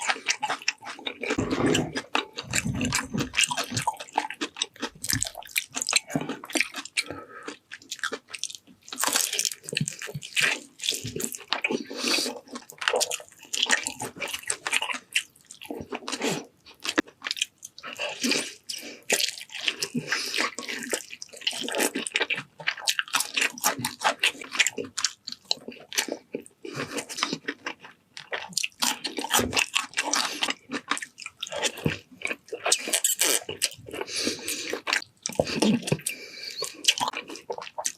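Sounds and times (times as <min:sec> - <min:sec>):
person chewing and crunching: 0:00.0 - 0:37.9.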